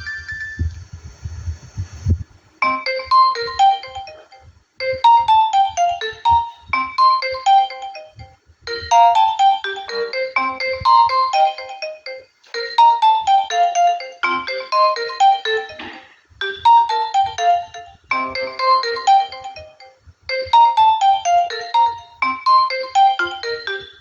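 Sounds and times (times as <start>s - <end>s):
phone ringtone melody: 2.6s - 24.0s.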